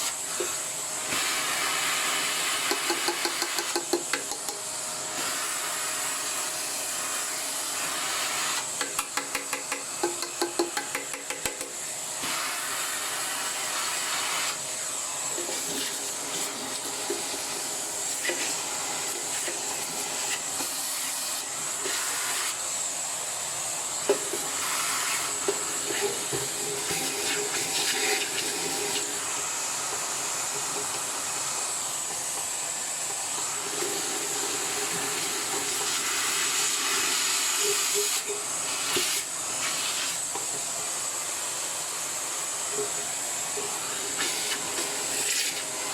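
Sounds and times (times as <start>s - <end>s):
vacuum cleaner running: 0.0s - 45.9s.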